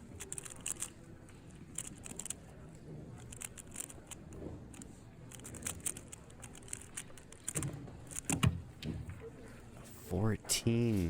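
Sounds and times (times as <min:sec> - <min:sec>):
speed cube clicking: 0:00.0 - 0:02.4, 0:03.2 - 0:08.5.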